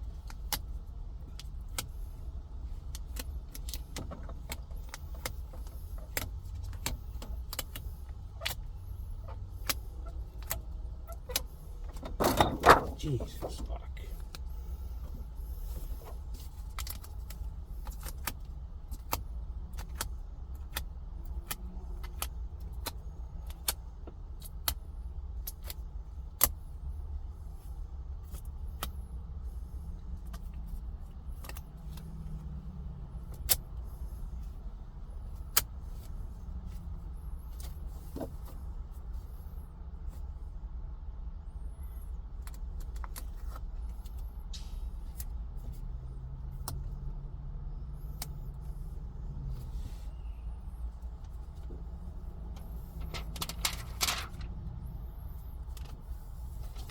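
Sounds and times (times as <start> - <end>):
low hum in vehicle cab: 0.0 - 56.9.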